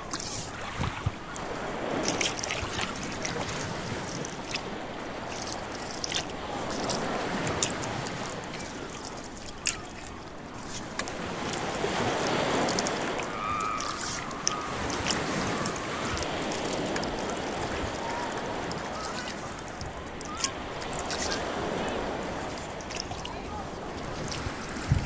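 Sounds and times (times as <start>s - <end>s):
oars splashing in water: 0.0s - 25.0s
waves washing on shore: 0.0s - 25.0s
faint voices: 5.0s - 25.0s.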